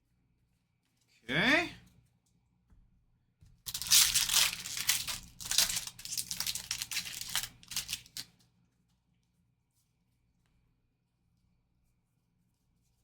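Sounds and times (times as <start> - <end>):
wrapper being torn and crinkled: 3.7 - 8.4.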